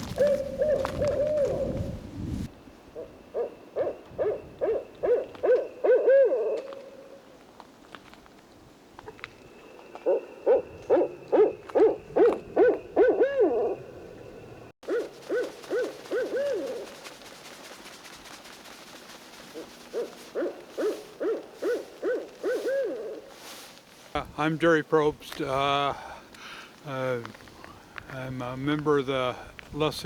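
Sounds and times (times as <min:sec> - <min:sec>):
owl hooting: 0:00.0 - 0:02.0, 0:03.0 - 0:07.1, 0:10.0 - 0:14.1, 0:14.9 - 0:17.2, 0:19.4 - 0:23.7.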